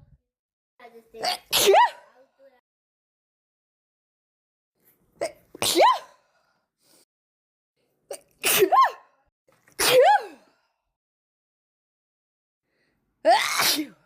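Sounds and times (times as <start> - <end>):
woman sneezing: 1.2 - 2.2, 5.2 - 6.2, 8.1 - 9.1, 9.8 - 10.5, 13.3 - 14.0.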